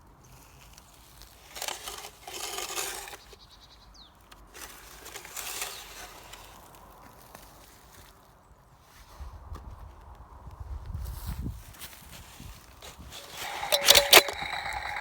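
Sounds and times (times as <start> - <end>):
toy chainsaw buzzing: 13.2 - 15.0.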